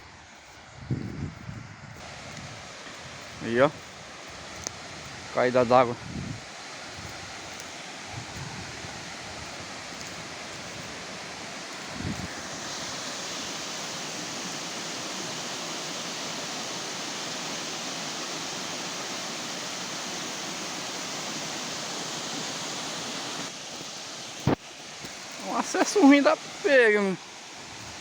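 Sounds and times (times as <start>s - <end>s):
waterfall rushing: 2.0s - 28.0s.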